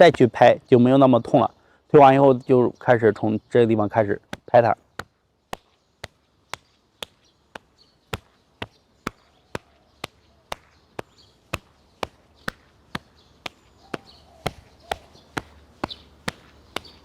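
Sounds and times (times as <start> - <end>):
hand slapping arm: 4.3 - 17.0.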